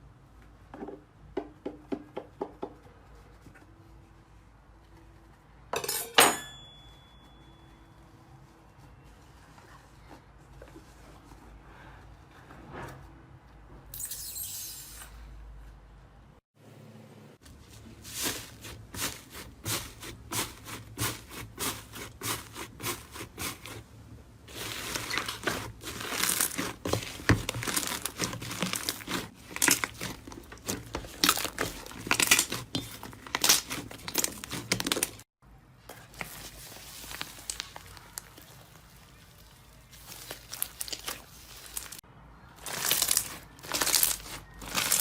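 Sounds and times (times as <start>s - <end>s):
slime crackling: 17.9s - 35.3s, 36.0s - 42.0s, 42.6s - 45.0s.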